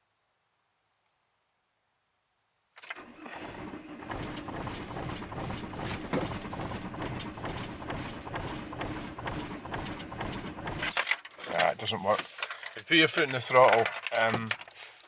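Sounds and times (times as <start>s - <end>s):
diesel engine cranking: 2.8s - 12.7s.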